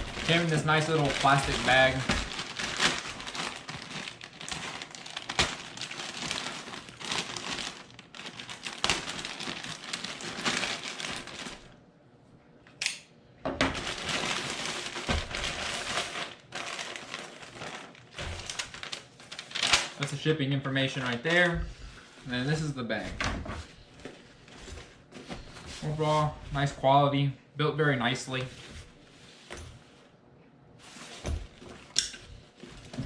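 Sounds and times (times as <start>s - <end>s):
plastic bag crinkling: 0.0s - 11.8s, 13.7s - 20.2s.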